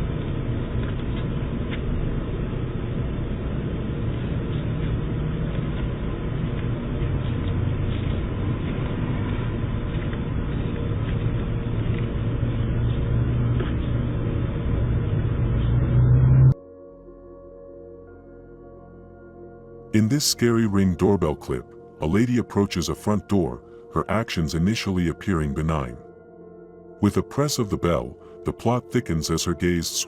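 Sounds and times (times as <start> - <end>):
low outdoor rumble: 0.0 - 16.6.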